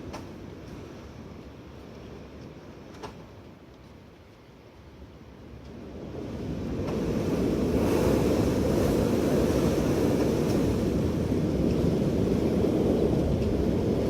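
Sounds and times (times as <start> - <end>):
strong wind blowing: 4.8 - 14.0.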